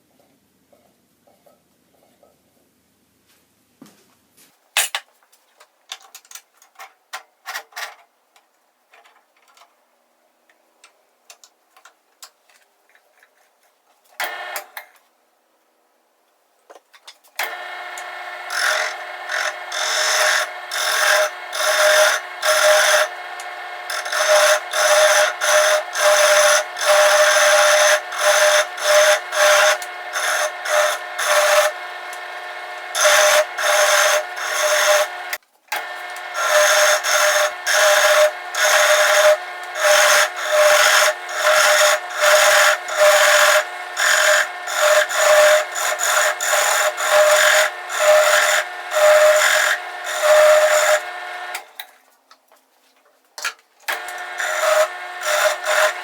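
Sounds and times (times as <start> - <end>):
woodworking power tool running: 14.2 - 14.8, 17.4 - 51.8, 53.9 - 56.0
rhythmic rasping of wood: 17.5 - 51.5, 53.9 - 56.0.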